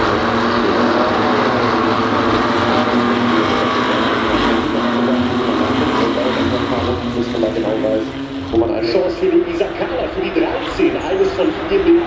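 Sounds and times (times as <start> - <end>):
race car engines revving: 0.0 - 12.0.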